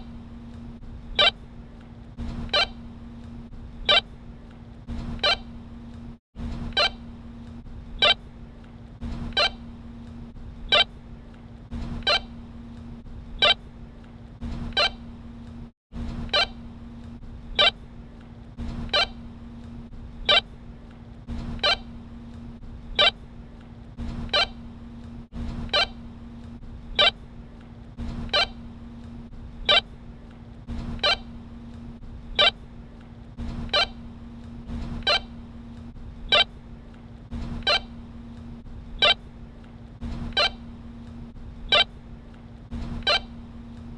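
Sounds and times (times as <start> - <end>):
low hum: 0.0 - 43.9.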